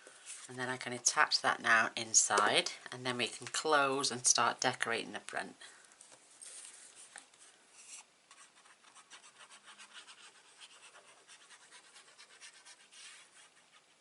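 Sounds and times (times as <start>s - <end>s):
scratching and rubbing on card: 6.4s - 14.0s.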